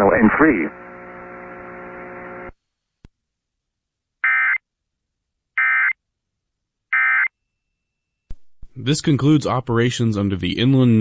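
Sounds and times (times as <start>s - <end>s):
low steady radio hum: 0.0s - 2.6s.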